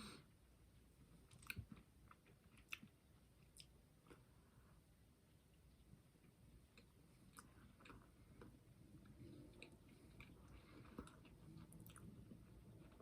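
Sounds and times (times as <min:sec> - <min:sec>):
chewing: 0:01.3 - 0:04.2, 0:06.7 - 0:13.0.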